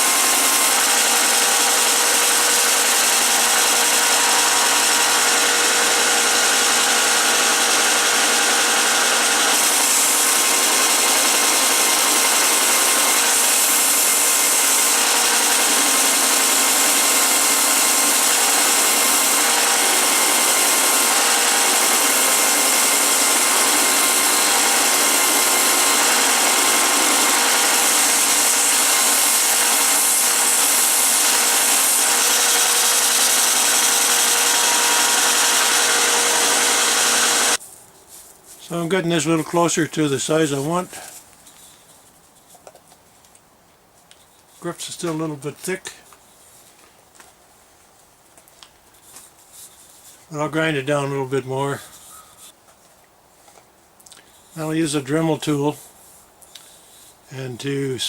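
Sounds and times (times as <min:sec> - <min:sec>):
sander rasping on wood: 0:00.0 - 0:37.6.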